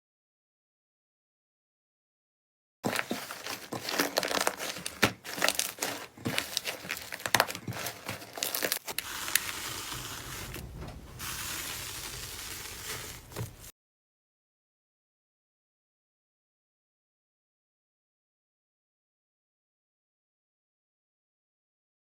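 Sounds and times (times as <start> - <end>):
slime crackling and popping: 3.9 - 13.7
steady hiss: 9.0 - 13.7.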